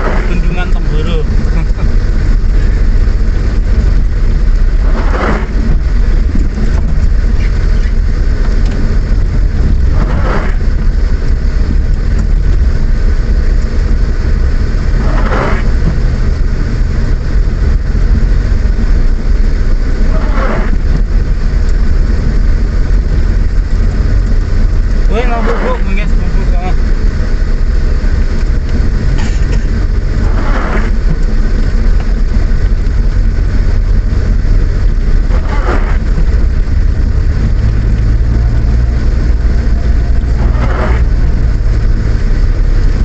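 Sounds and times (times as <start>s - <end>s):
engine and tyres rumbling: 0.0s - 43.0s
short swish: 4.8s - 5.9s, 9.8s - 10.7s, 15.0s - 15.9s, 20.0s - 20.9s, 29.2s - 31.2s, 35.3s - 36.3s, 40.0s - 41.4s.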